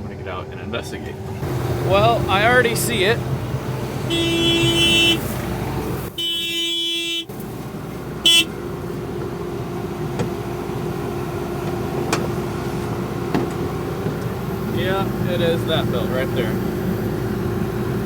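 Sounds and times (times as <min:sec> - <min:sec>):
warning horn blasts: 0:00.0 - 0:16.5
engine running steadily: 0:00.0 - 0:18.0.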